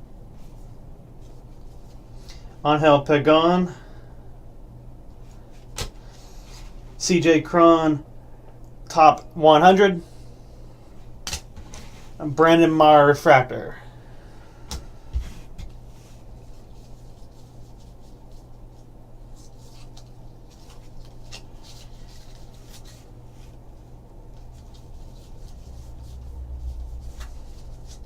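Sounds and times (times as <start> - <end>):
steady low hum: 0.0 - 28.0
cards rustling: 16.4 - 23.6, 24.2 - 28.0.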